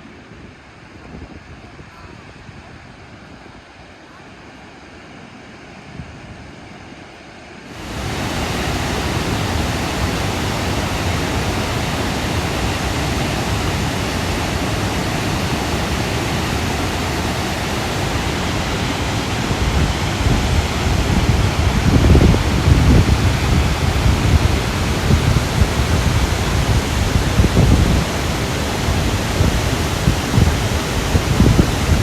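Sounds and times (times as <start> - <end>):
waterfall rushing: 7.6 - 32.0.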